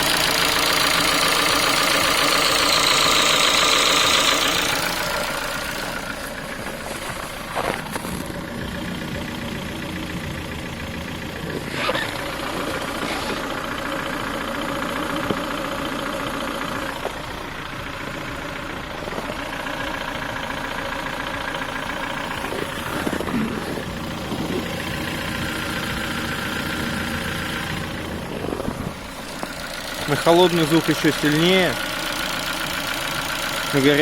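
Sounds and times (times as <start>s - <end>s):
car engine idling with knock: 0.0s - 34.0s.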